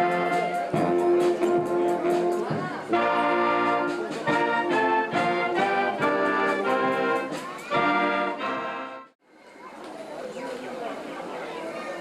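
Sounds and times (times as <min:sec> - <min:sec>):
brass music held chords: 0:00.0 - 0:09.2.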